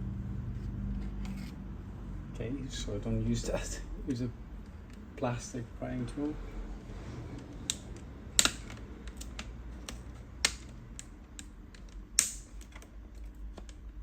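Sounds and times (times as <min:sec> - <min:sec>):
plastic clicks and snaps: 0:07.4 - 0:13.8.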